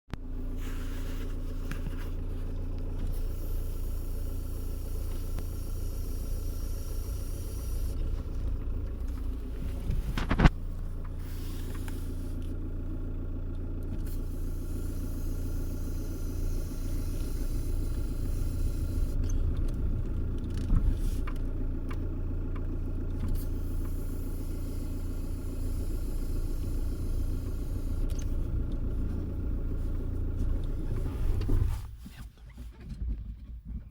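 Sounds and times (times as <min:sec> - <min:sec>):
diesel engine idling: 0:00.2 - 0:32.1.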